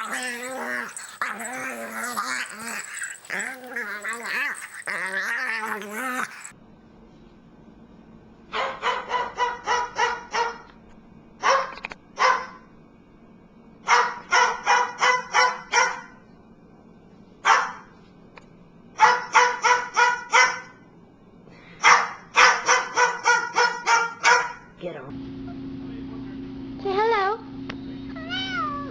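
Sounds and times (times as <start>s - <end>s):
small dog yapping: 0.0s - 6.5s, 19.0s - 20.7s, 21.8s - 24.7s.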